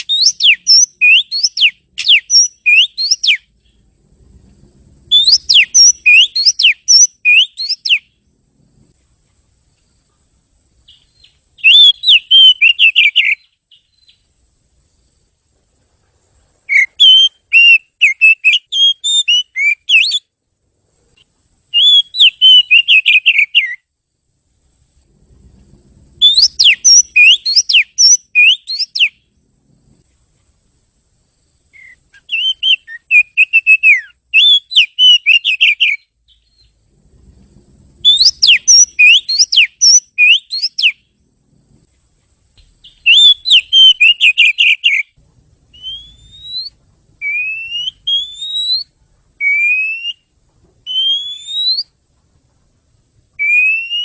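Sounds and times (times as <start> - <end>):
bird singing whistled notes: 0.0 - 3.9, 5.1 - 8.2, 10.8 - 14.4, 16.6 - 20.3, 21.7 - 23.9, 26.1 - 29.3, 31.7 - 36.8, 38.0 - 41.1, 42.8 - 52.0, 53.4 - 54.0.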